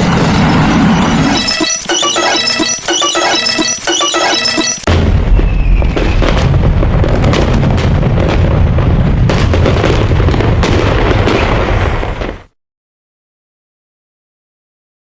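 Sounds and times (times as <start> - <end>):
crackling explosion rumble: 0.0 - 1.4, 4.9 - 12.5.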